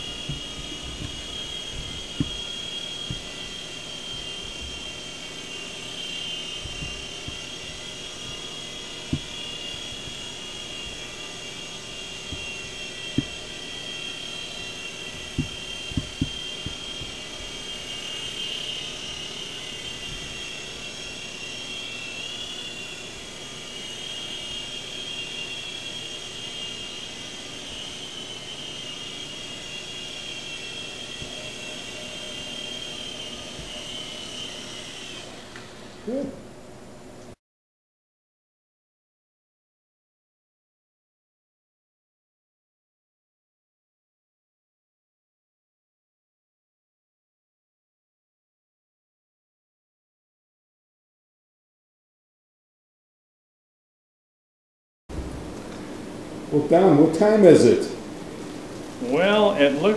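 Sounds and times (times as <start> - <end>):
rc helicopter motor whine: 0.0 - 36.7, 55.1 - 59.9.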